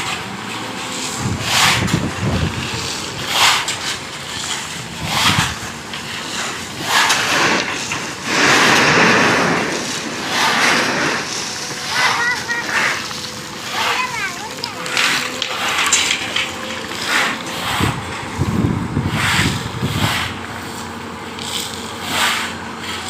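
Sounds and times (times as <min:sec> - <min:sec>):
wind buffeting microphone: 0:01.2 - 0:03.3, 0:04.8 - 0:05.9, 0:17.6 - 0:20.5.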